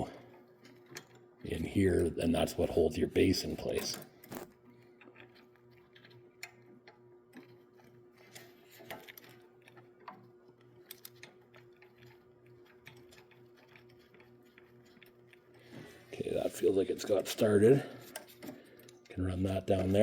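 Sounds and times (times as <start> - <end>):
low steady hum: 0.0 - 20.0
small metal clicks: 3.6 - 15.6.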